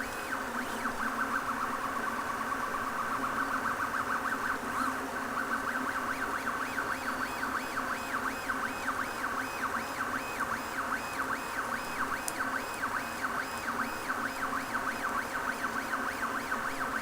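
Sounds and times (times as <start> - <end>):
stepper motors whining: 0.0 - 17.0.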